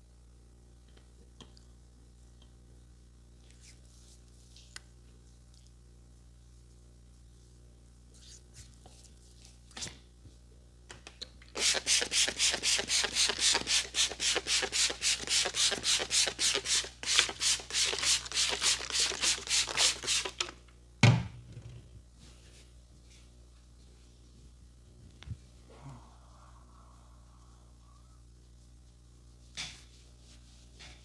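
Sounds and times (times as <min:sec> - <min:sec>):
hands rubbing head briskly: 0:11.6 - 0:20.5
loud thump: 0:21.0 - 0:21.9.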